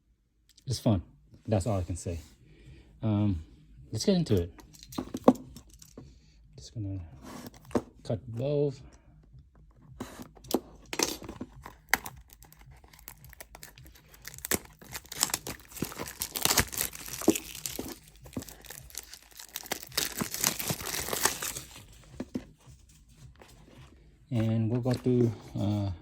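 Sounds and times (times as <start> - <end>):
plastic shrink wrap crinkling and tearing: 10.9 - 22.1.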